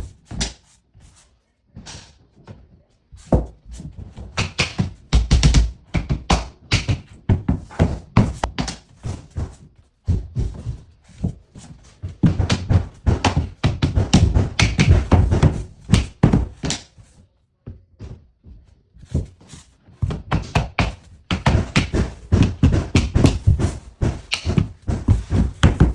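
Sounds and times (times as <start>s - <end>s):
flooring planks tapped into place: 20.0s - 25.9s.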